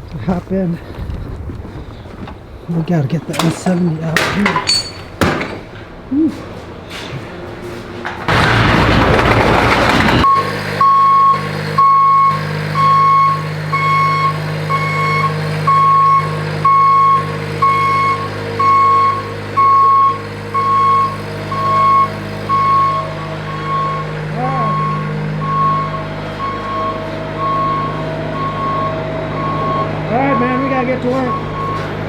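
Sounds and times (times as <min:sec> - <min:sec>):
diesel engine running: 0:00.0 - 0:32.0
loud rushing noise: 0:07.7 - 0:10.4
backup alarm beeping: 0:08.4 - 0:32.0.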